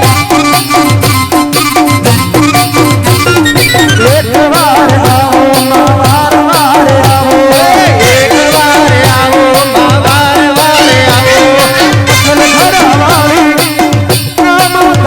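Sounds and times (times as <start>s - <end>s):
sliding lead melody: 0.0s - 4.8s
steady drum beat: 0.0s - 15.0s.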